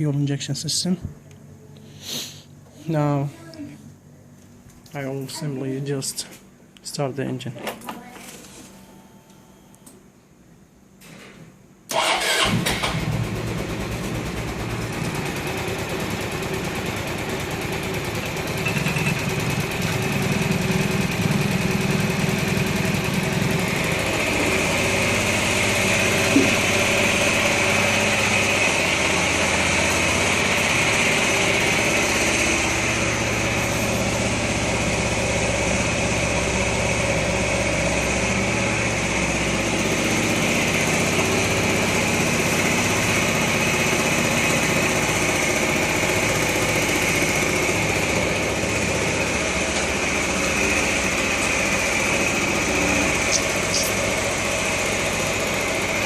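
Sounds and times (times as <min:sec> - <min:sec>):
scooter engine idling: 0:12.0 - 0:56.0.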